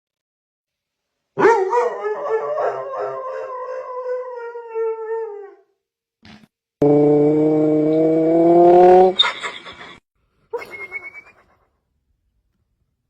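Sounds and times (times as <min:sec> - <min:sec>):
dog howling: 0:01.4 - 0:05.7.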